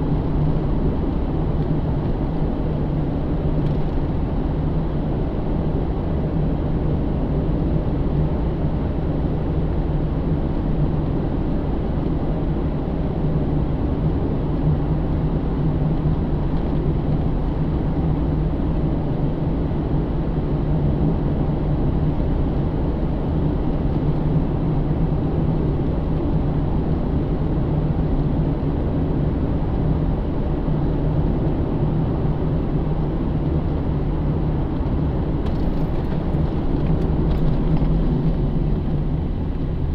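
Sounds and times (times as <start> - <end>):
car engine droning: 34.8 - 39.9
tyre and road noise: 35.0 - 39.9.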